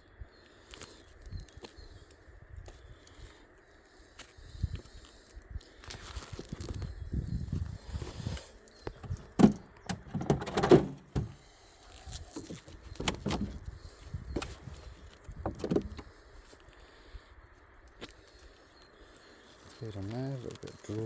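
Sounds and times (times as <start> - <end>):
wooden frames knocking and scraping: 8.9 - 11.4, 12.3 - 13.7, 14.4 - 16.1.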